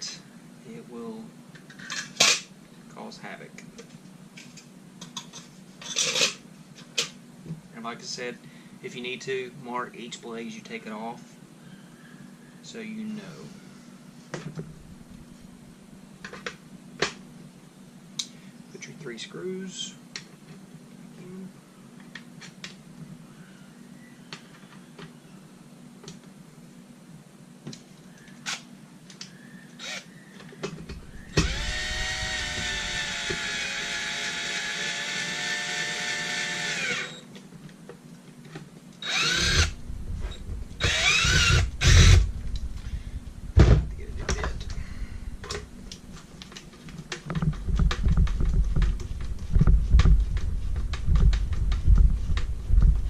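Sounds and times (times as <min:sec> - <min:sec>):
power drill whine: 0:29.8 - 0:30.1, 0:31.1 - 0:37.3, 0:39.0 - 0:39.8, 0:40.8 - 0:42.3.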